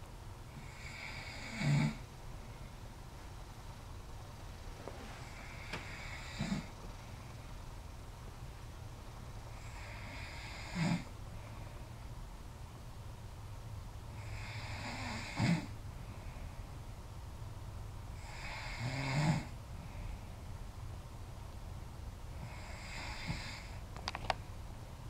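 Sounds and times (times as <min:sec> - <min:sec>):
steady low hum: 0:00.0 - 0:25.0
woman snoring: 0:00.5 - 0:02.0, 0:05.2 - 0:06.8, 0:09.6 - 0:11.1, 0:14.2 - 0:15.7, 0:18.2 - 0:19.6, 0:22.4 - 0:23.8.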